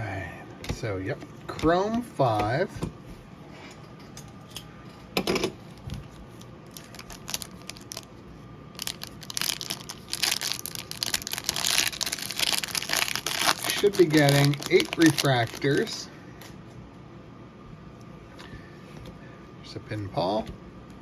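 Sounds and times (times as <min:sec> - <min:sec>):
wrapper crackling and crinkling: 0:05.7 - 0:16.1.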